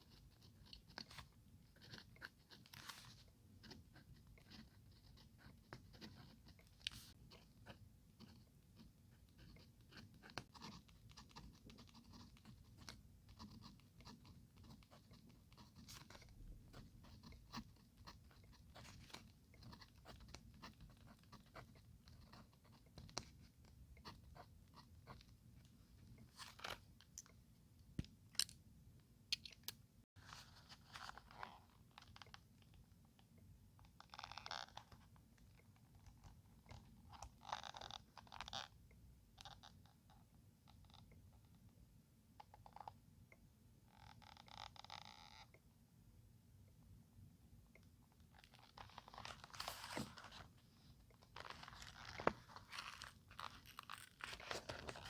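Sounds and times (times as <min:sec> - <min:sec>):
paper taps and crinkles: 0:49.2 - 0:50.5.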